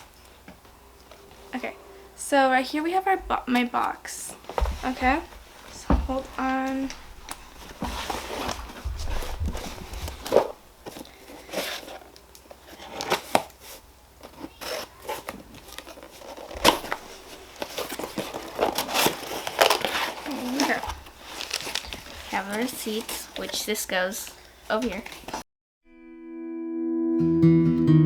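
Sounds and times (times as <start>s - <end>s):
packing crinkling: 6.7s - 25.4s
tape tearing: 7.6s - 23.6s.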